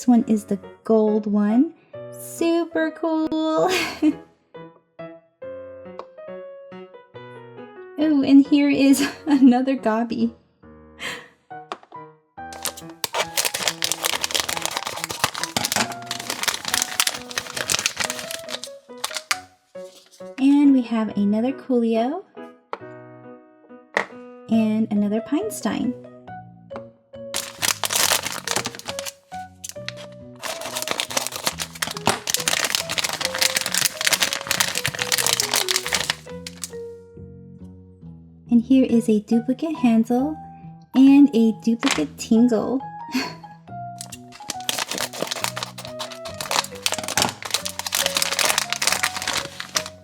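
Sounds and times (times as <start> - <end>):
light background music: 0.0 - 50.0
plastic packaging crinkling: 12.6 - 20.3, 27.4 - 36.8, 41.8 - 42.1, 44.0 - 50.0.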